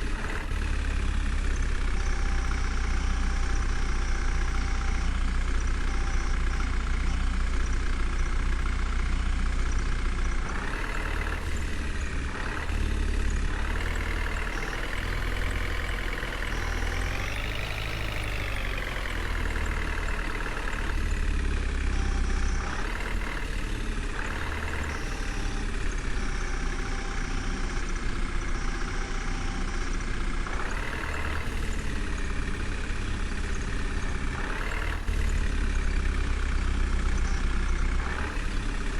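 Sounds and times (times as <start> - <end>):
diesel engine revving: 0.0 - 38.9.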